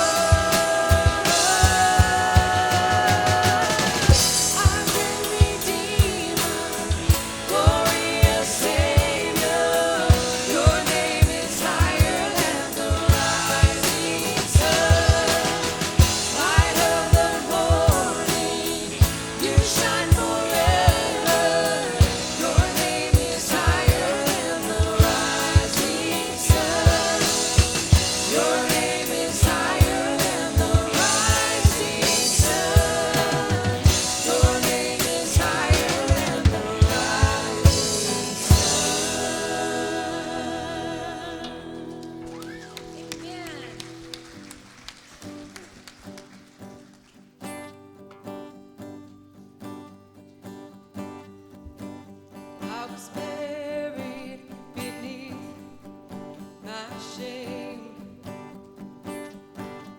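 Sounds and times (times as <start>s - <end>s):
drum kit beat: 0.0s - 41.0s
worship music with singing: 0.0s - 46.4s, 52.6s - 55.8s.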